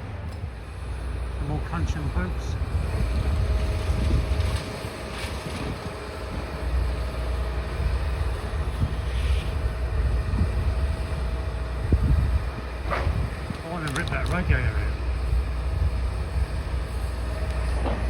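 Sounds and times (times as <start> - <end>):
demolition machine running: 0.0 - 18.0
wind buffeting microphone: 0.4 - 18.0
debris crunching: 13.0 - 14.8.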